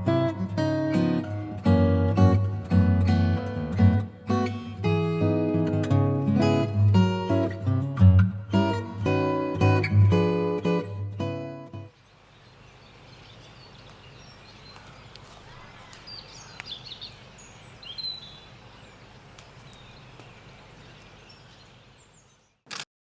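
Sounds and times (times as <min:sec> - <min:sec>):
high bird chirps: 0:11.9 - 0:22.6
steady low outdoor hiss: 0:11.9 - 0:22.6.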